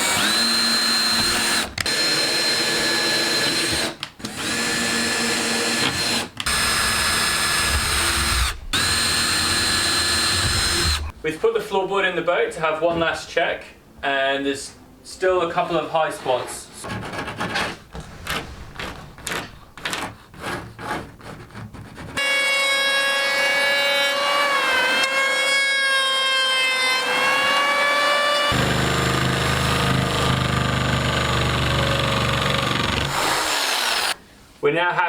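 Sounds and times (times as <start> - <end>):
power tool motor whining: 0.0 - 11.1, 26.3 - 34.2
hand rasp on wood: 16.8 - 22.2.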